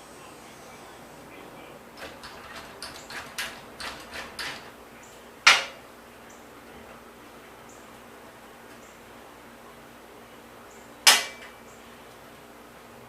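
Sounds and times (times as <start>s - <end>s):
light knocks and clatters: 2.0s - 4.8s.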